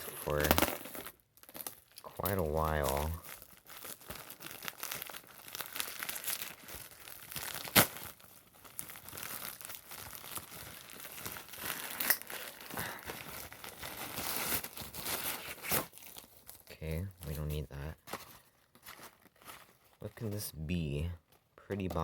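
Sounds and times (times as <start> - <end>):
packaging torn and crinkled: 0.0 - 20.2
sharp packaging snap: 7.4 - 8.0.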